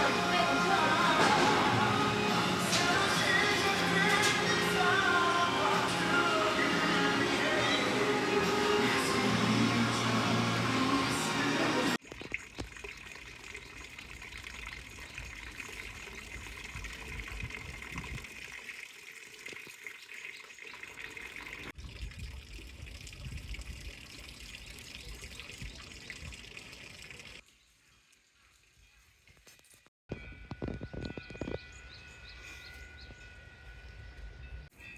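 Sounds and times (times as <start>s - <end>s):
running water rushing: 0.0s - 21.8s.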